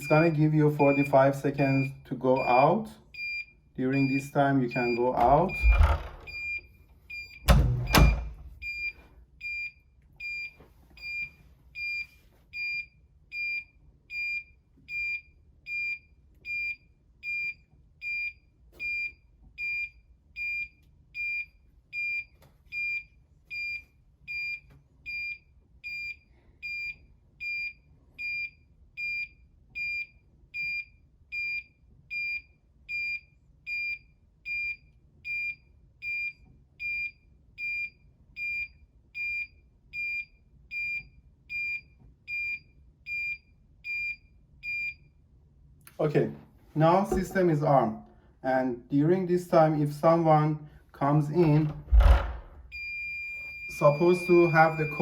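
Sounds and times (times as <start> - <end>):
alarm keypad beeping: 0.0 - 45.0, 52.7 - 55.0.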